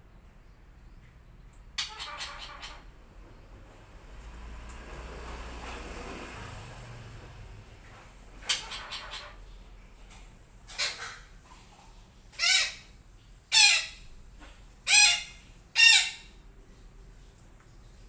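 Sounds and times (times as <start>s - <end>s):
parakeet squawking: 1.8s - 2.9s, 8.4s - 9.4s, 12.4s - 12.9s, 13.5s - 14.1s, 14.9s - 16.3s.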